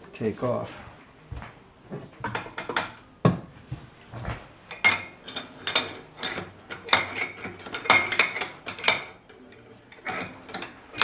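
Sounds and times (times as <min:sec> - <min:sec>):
wrench clanking on metal: 0:04.7 - 0:11.0.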